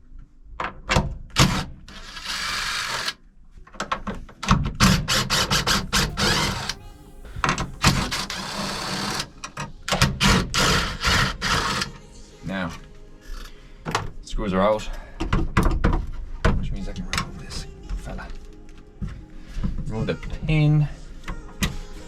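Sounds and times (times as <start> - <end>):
steady whir: 5.1 - 11.9.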